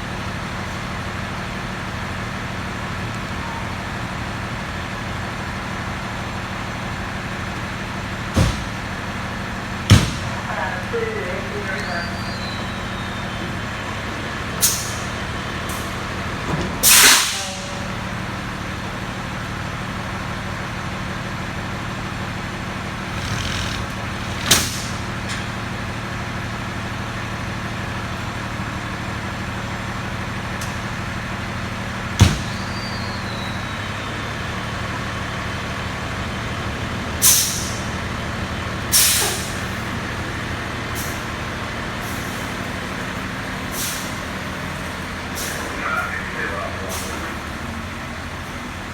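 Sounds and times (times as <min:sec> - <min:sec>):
fire truck engine running: 0:00.0 - 0:48.9
air brake hisses: 0:14.6 - 0:15.1, 0:16.8 - 0:17.6, 0:23.1 - 0:25.3, 0:37.2 - 0:37.9, 0:38.9 - 0:39.8, 0:43.7 - 0:44.2, 0:45.3 - 0:45.7.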